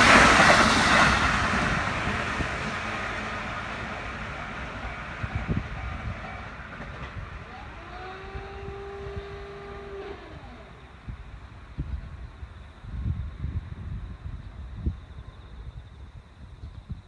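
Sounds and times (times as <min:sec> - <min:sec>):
electric train rumbling past: 0:00.0 - 0:16.3
steady whining tone: 0:04.5 - 0:12.0.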